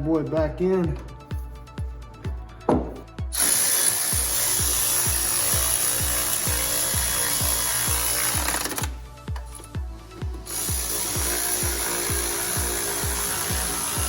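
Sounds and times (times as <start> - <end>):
electronic music with kick drum: 0.0 - 14.0
power tool running: 3.3 - 9.6, 10.3 - 14.0.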